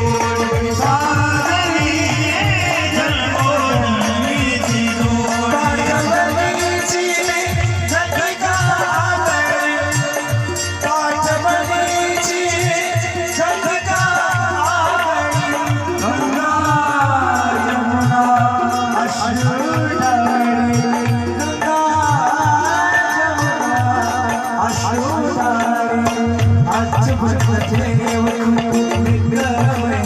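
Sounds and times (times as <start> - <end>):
person singing devotional melody: 0.0 - 30.0.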